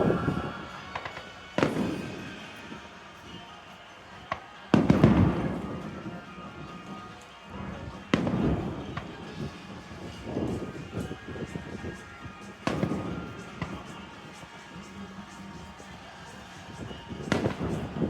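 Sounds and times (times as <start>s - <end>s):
fireworks bangs with echo: 0.0s - 18.0s
music: 0.0s - 18.0s.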